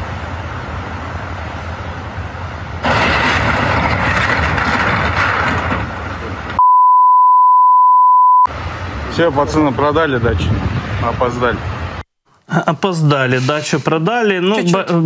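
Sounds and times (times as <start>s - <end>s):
rushing outdoor noise with rumble: 0.0s - 6.6s, 8.5s - 15.0s
censor bleep: 6.6s - 8.5s.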